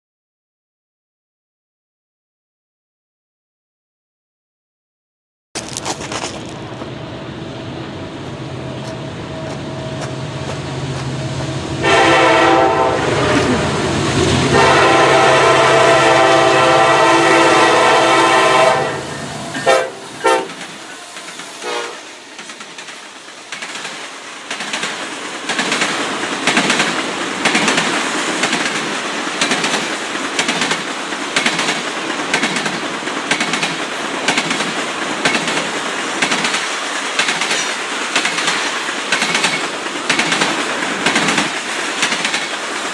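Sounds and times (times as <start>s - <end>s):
train rumble: 5.6s - 42.9s
train horn: 11.2s - 22.3s
wheels clattering over rail joints: 19.0s - 42.9s.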